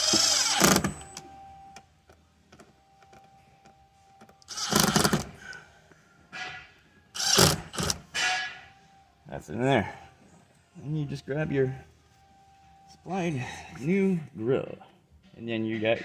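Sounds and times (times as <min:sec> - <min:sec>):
power drill driving screws: 0:00.0 - 0:00.9, 0:04.5 - 0:05.3, 0:07.2 - 0:08.0.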